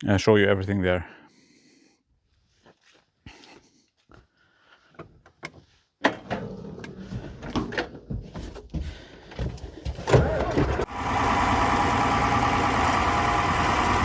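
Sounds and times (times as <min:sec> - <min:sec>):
clunks and clatter: 0:05.0 - 0:10.9.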